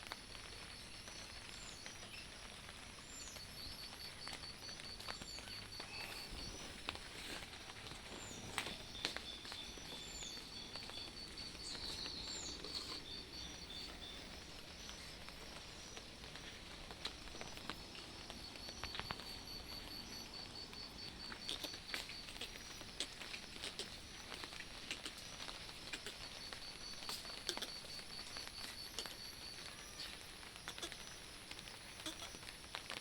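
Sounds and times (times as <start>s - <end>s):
steady light rain: 0.0s - 33.0s
bird high chirping: 4.7s - 22.8s.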